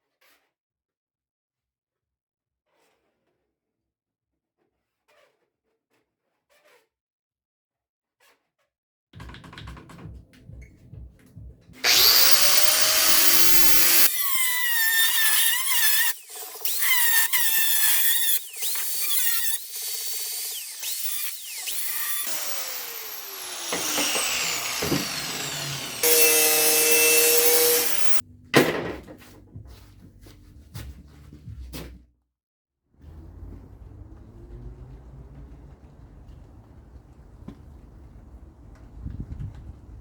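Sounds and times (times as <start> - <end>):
electric grinder whining on steel: 11.8 - 28.2.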